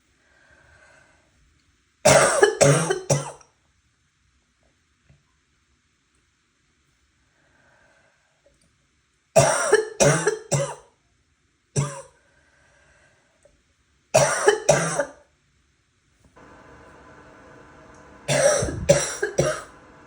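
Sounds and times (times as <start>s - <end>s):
person coughing: 2.1s - 3.4s, 9.4s - 10.8s, 11.8s - 12.1s, 14.2s - 15.2s, 18.3s - 19.7s.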